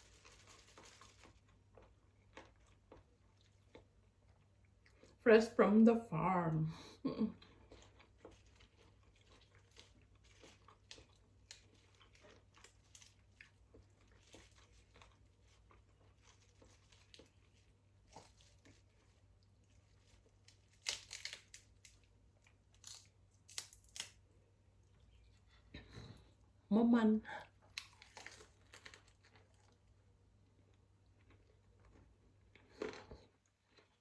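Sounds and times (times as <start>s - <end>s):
person chewing: 0.0s - 5.2s, 7.4s - 26.5s, 27.5s - 34.0s
crunchy bites: 19.8s - 24.2s.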